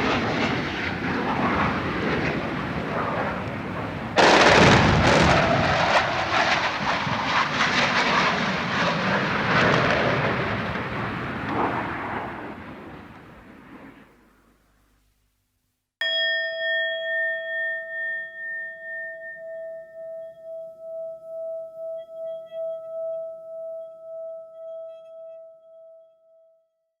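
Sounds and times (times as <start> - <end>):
low rumble: 0.2 - 8.8
struck metal tone ringing: 16.0 - 26.4.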